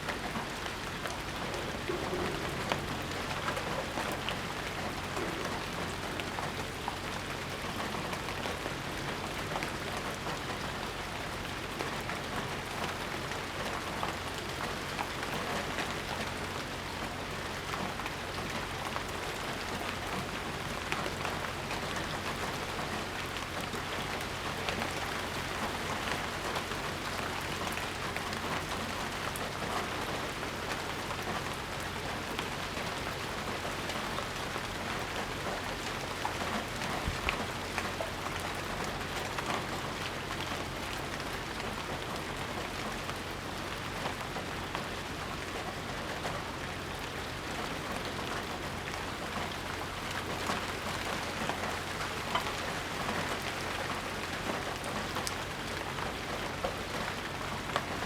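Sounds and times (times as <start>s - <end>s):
rain pattering: 0.0s - 58.0s.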